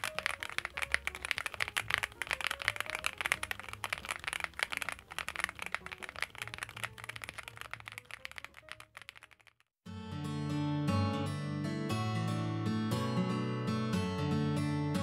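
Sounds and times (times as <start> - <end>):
mechanical keyboard typing: 0.0 - 9.7.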